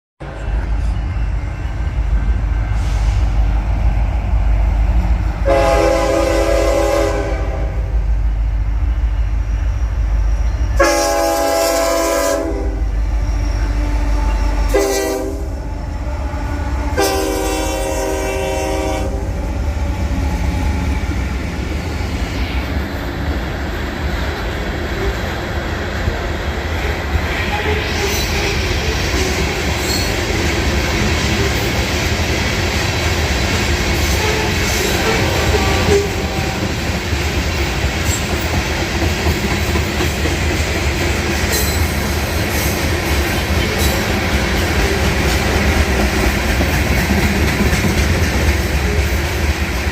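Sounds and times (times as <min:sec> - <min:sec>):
low rumble of passing train: 0:00.2 - 0:49.9
diesel locomotive horn: 0:05.4 - 0:08.1, 0:10.7 - 0:21.1, 0:34.0 - 0:36.9.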